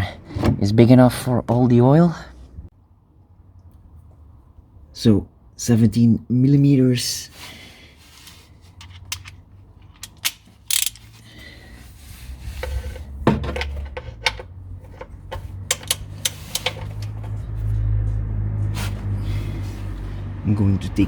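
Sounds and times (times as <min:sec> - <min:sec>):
ratchet wrench clicking: 0:08.8 - 0:11.1, 0:15.7 - 0:17.1.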